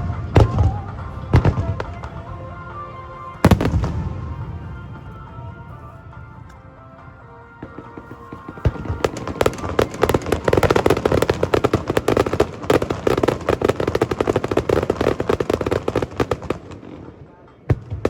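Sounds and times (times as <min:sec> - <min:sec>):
fireworks crackling bursts: 0:00.0 - 0:05.7, 0:07.5 - 0:18.0.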